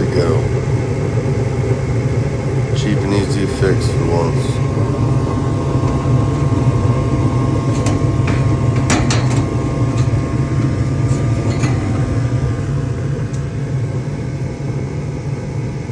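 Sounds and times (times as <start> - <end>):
furnace blower humming: 0.0 - 15.9.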